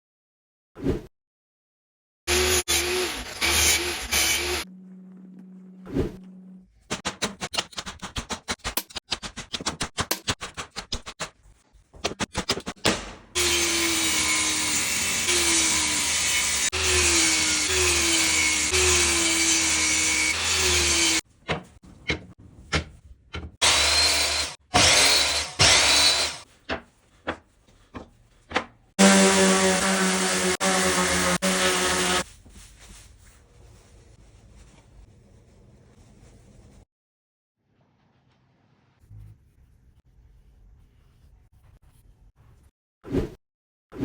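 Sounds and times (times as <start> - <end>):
power tool motor cutting wood: 2.3 - 4.7, 23.6 - 26.4, 29.0 - 32.2.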